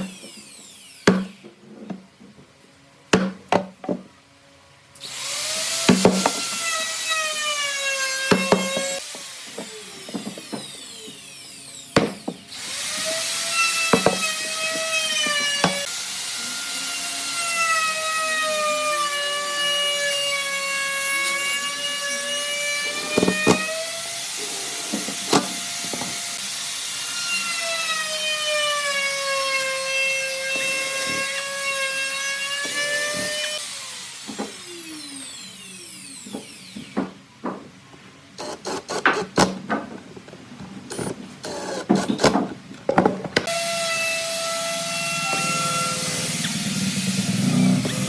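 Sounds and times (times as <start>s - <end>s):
power tool motor whining: 5.0s - 28.3s, 40.9s - 42.3s, 43.4s - 48.0s.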